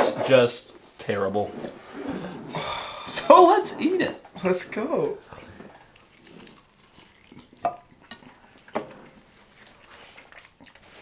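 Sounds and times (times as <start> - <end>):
faint rustling while eating: 4.2 - 11.0.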